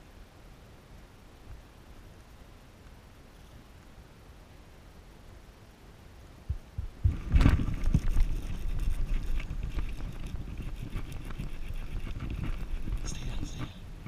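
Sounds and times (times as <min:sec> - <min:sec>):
wind buffeting microphone: 0:06.5 - 0:14.0.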